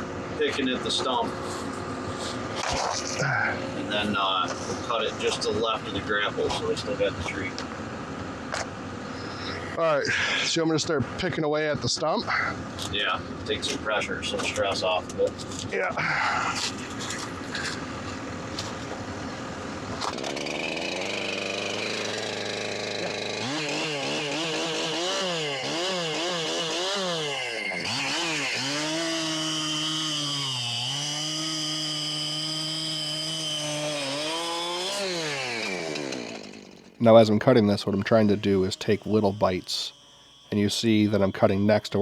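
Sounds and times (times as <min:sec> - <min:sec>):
chainsaw cutting wood: 0:19.9 - 0:37.0.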